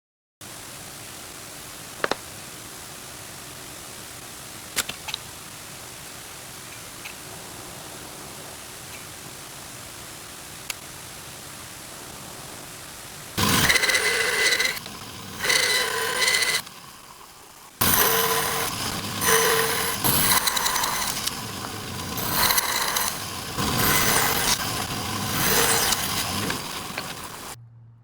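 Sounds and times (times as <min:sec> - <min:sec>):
electric woodworking power tool: 0:13.4 - 0:27.6.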